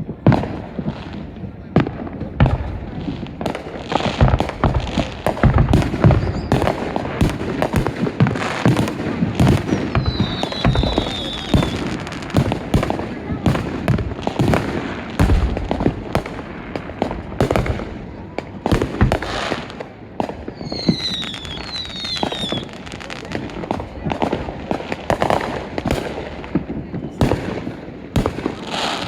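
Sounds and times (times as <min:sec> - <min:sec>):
fireworks bangs and crackles: 0:00.0 - 0:29.0
firework whistles falling in pitch: 0:06.0 - 0:06.8, 0:09.4 - 0:12.0, 0:20.5 - 0:22.8.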